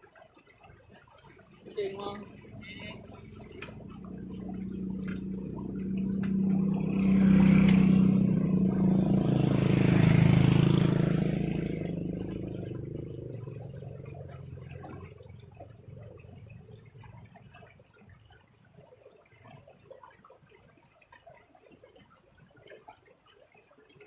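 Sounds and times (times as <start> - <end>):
motor vehicle passing by: 1.5 - 17.6.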